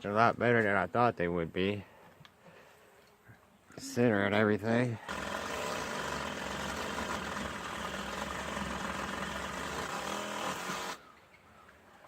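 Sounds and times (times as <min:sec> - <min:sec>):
small engine running: 0:05.1 - 0:11.0.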